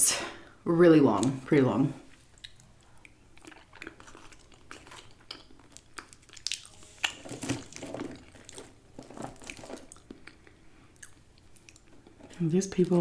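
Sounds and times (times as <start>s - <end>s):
chewing and crunching: 2.1s - 13.0s
paper wrapping crinkling: 6.1s - 10.1s.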